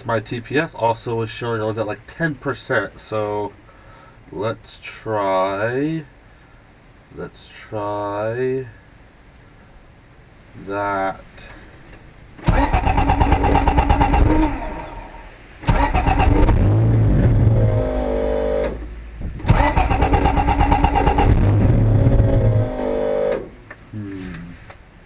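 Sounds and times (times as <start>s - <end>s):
car engine cranking and sputtering: 12.0s - 23.9s.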